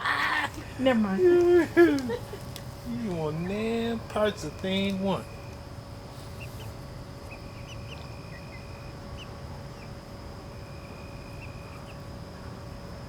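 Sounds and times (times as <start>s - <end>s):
steady high drone: 0.0s - 13.0s
faint bird chirps: 6.2s - 12.6s.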